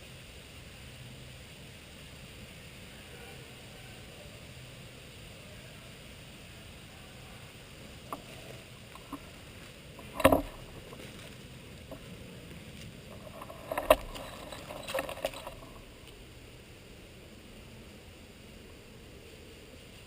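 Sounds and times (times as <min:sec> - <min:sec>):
faint steady hiss: 0:00.0 - 0:20.0
clacks and knocks of gear: 0:10.0 - 0:12.1, 0:13.1 - 0:15.8.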